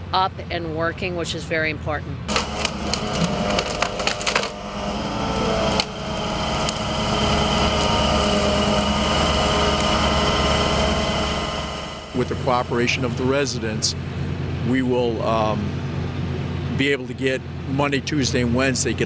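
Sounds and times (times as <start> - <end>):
wood cracking and splintering: 2.3 - 13.2
machine engine running: 2.3 - 16.8.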